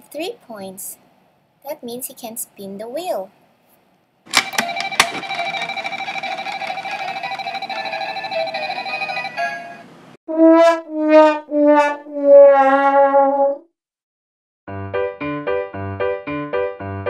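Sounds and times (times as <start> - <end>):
toy prize wheel clicking: 4.3 - 9.4.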